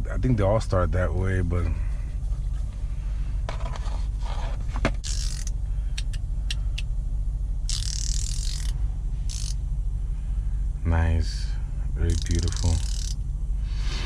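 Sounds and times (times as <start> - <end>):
steady low rumble: 0.0 - 14.0
hand ratchet clicking and rasping: 5.0 - 6.8, 7.7 - 9.6, 12.1 - 13.2.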